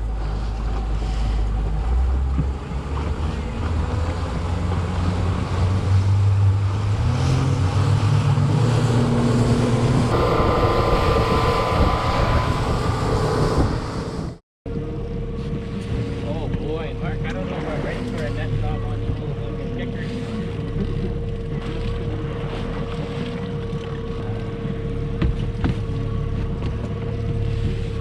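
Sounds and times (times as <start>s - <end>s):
outboard motor running: 0.0s - 28.0s
wind buffeting microphone: 3.6s - 14.4s.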